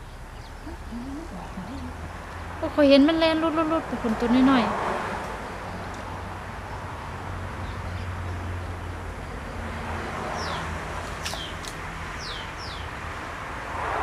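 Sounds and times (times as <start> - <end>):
water pump engine humming: 0.0 - 13.6
birds whistling: 10.4 - 10.6, 11.2 - 12.9.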